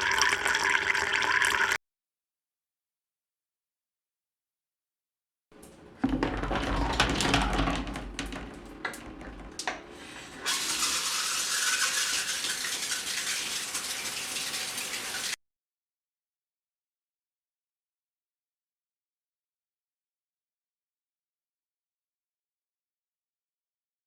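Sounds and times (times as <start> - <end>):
water splashing and sloshing: 5.6 - 15.4
running tap water hiss: 9.6 - 15.4.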